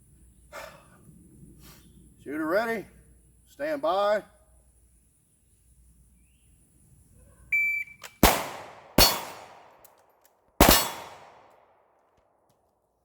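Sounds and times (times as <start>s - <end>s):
shot timer beep: 7.6s - 8.0s
pistol shots echoing: 8.2s - 10.0s, 10.6s - 11.8s.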